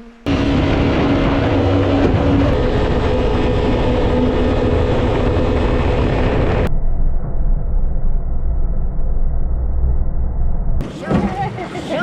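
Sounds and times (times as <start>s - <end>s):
boat engine running loudly: 0.3s - 6.7s
rush of noise: 0.3s - 12.0s.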